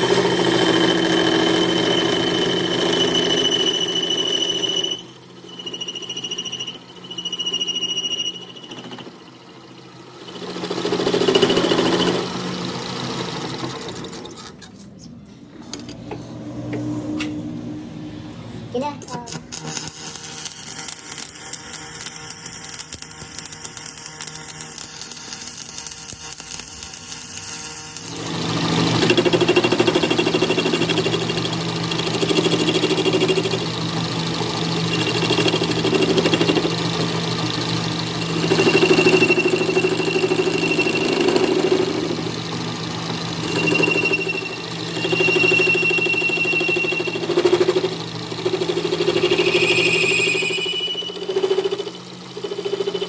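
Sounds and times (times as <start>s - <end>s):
lathe motor hum: 0.0s - 14.3s, 22.0s - 53.0s
cutting tool squealing on metal: 1.2s - 9.0s, 19.6s - 42.3s, 42.9s - 53.0s.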